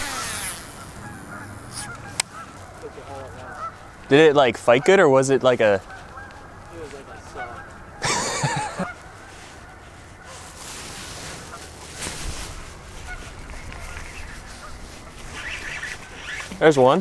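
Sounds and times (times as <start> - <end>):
geese honking: 0.0 - 17.0.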